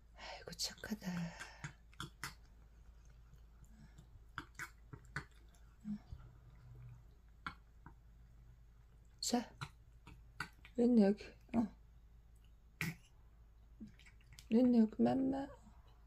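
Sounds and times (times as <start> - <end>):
cat chewing and licking: 0.5 - 11.5, 13.8 - 14.5.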